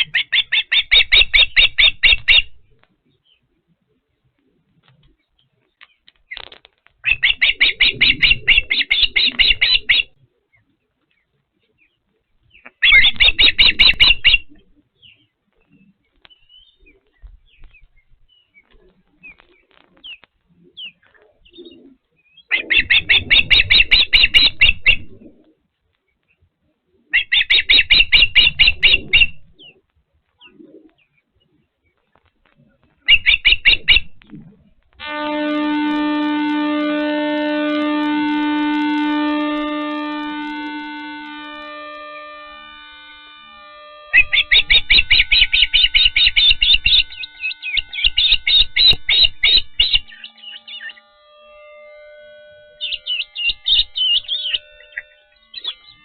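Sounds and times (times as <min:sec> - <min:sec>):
bird high-pitched chirps: 0:00.0 - 0:03.5, 0:05.2 - 0:25.2, 0:27.1 - 0:29.8, 0:33.0 - 0:34.2, 0:44.1 - 0:51.7, 0:52.6 - 0:56.0.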